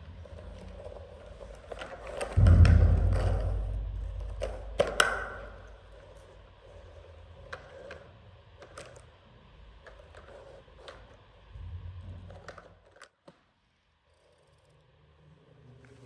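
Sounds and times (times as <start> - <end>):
low rumble: 2.4 - 6.4.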